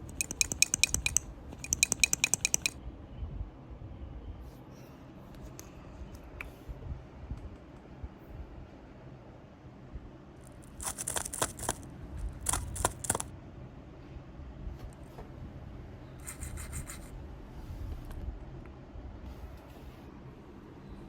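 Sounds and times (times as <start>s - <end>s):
scratchy rubbing on microphone: 10.6s - 11.8s, 12.4s - 13.3s, 16.2s - 17.1s.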